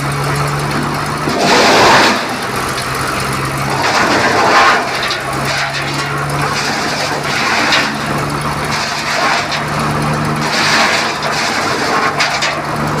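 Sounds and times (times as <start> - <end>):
chainsaw cutting wood: 1.2 - 2.9, 10.4 - 12.6.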